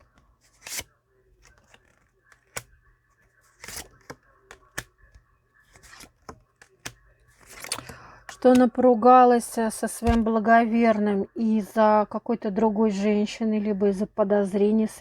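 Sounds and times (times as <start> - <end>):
papery card swishes: 3.5 - 4.9, 6.8 - 8.5.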